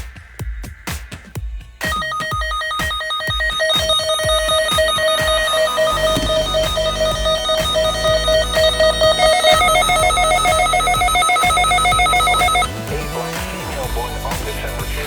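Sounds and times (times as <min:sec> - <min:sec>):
rapid electronic alarm beeping: 0:01.8 - 0:13.2.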